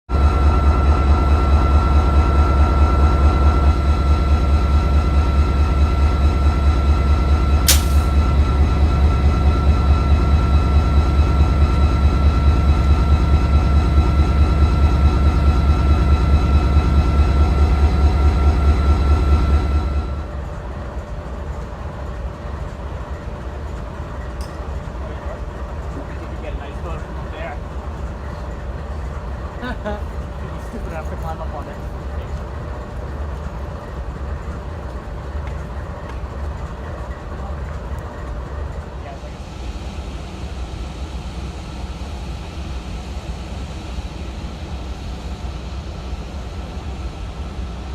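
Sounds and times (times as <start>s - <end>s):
diesel locomotive engine: 0.0s - 47.9s
sharp click: 7.7s - 8.1s.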